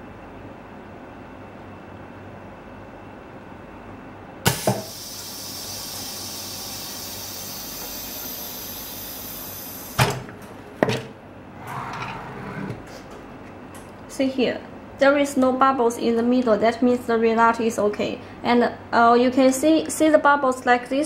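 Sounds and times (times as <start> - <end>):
air hissing: 4.5 - 10.1.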